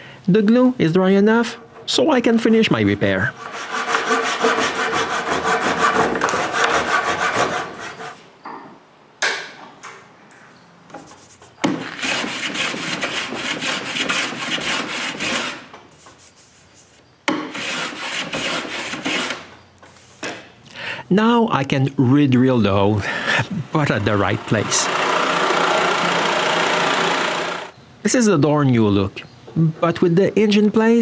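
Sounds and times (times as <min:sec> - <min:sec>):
hand tool rasping on hardwood: 0:03.4 - 0:08.2, 0:17.5 - 0:19.4.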